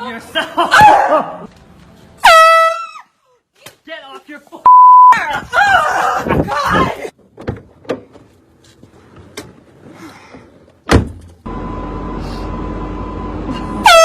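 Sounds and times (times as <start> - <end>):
loud air horn blast: 2.2 - 2.8, 13.8 - 14.0.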